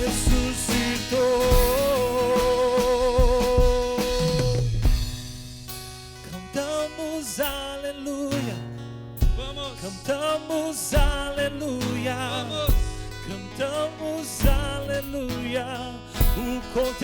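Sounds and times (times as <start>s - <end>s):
gospel band music: 0.0s - 5.4s
bass guitar: 0.0s - 5.9s
sharp drum hits: 0.0s - 6.0s, 9.2s - 9.9s.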